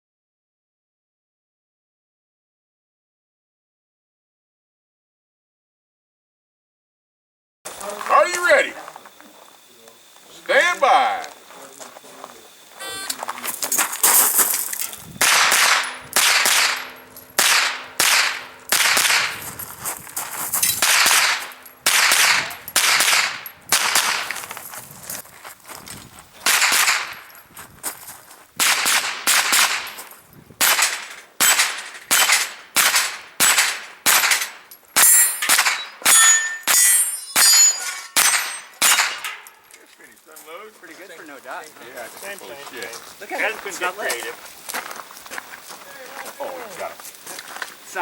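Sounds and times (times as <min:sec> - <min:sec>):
steel targets ringing: 0:15.2 - 0:19.4, 0:20.6 - 0:24.4, 0:30.6 - 0:39.7
carbine firing rapid shots: 0:15.2 - 0:19.5, 0:20.8 - 0:24.4, 0:26.4 - 0:27.2, 0:28.6 - 0:30.0, 0:30.6 - 0:36.3, 0:38.2 - 0:39.3.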